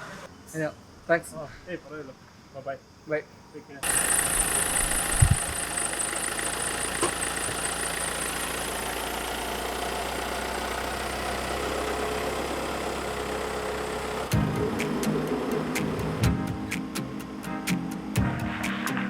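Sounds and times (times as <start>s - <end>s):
vehicle engine idling: 3.8s - 16.4s.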